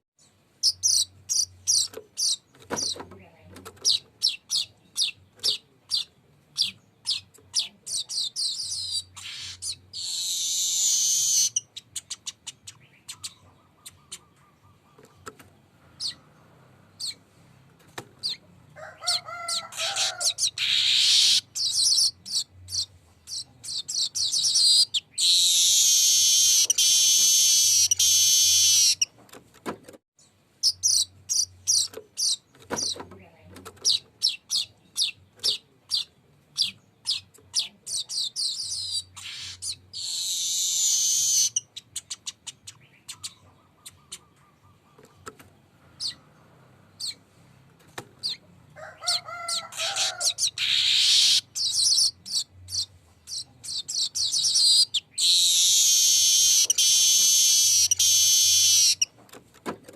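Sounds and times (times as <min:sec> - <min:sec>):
bird singing trills: 0:00.2 - 0:03.0, 0:03.8 - 0:15.3, 0:15.9 - 0:17.2, 0:19.5 - 0:29.1, 0:30.2 - 0:33.0, 0:33.8 - 0:45.3, 0:49.8 - 0:59.1.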